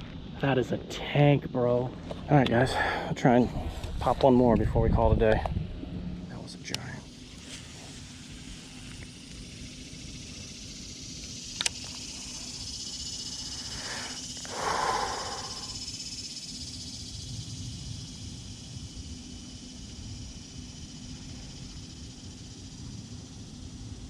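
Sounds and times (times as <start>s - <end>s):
high-pitched insect drone: 0.0s - 5.5s, 6.1s - 24.0s
sharp click: 11.5s - 12.0s.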